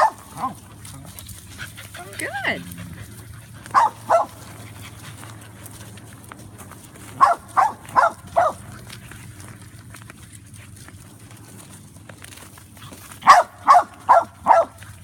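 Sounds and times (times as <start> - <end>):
dog barking: 0.0 - 0.6, 3.7 - 4.4, 7.2 - 8.6, 13.2 - 14.8.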